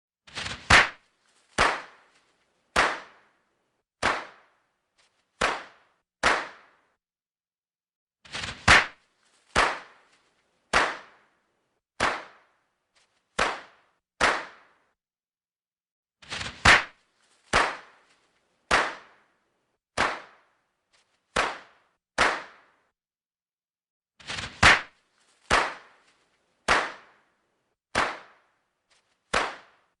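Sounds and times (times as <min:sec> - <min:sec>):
soft crackle: 0:00.3 - 0:03.4, 0:08.3 - 0:10.7, 0:24.2 - 0:26.6.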